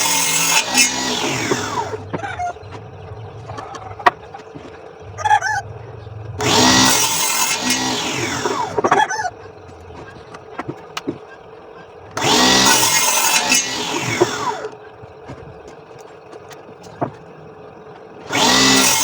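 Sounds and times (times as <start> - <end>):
small power tool motor whine: 0.0 - 3.5, 6.2 - 10.3, 12.1 - 14.8, 18.2 - 19.0.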